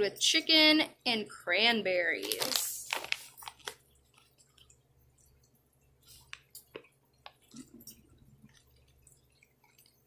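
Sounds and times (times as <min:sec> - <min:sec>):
faint clicks and taps: 0:03.4 - 0:10.0.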